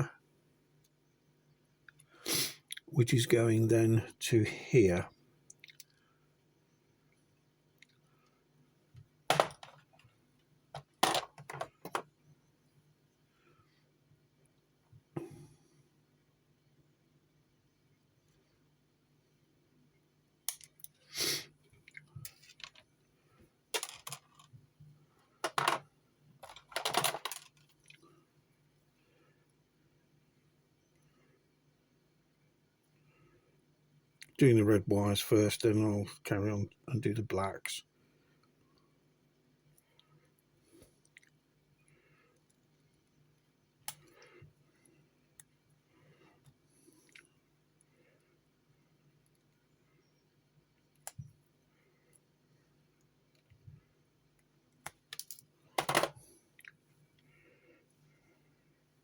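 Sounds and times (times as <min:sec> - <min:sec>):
low steady hum: 0:00.0 - 0:59.0
clicks and rustles of wire: 0:09.0 - 0:12.1, 0:20.4 - 0:21.0, 0:21.7 - 0:28.1, 0:54.4 - 0:57.4.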